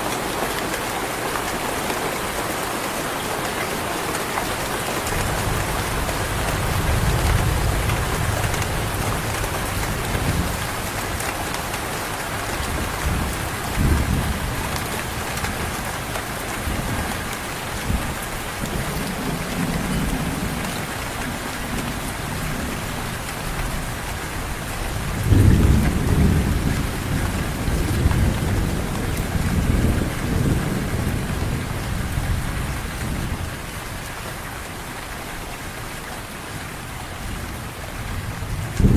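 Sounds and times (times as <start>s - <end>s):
heavy rain: 0.0s - 38.9s
thunder rumbling: 4.6s - 11.8s, 12.4s - 17.2s, 24.6s - 33.5s, 37.3s - 38.9s.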